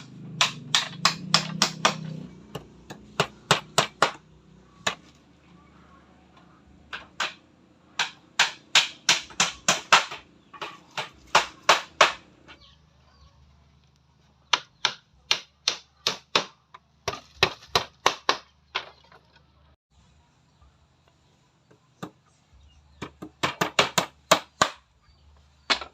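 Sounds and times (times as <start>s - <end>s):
hammer striking wood: 0.4s - 5.1s, 6.9s - 7.4s, 8.0s - 12.3s, 14.5s - 19.0s, 23.0s - 24.8s, 25.7s - 25.9s.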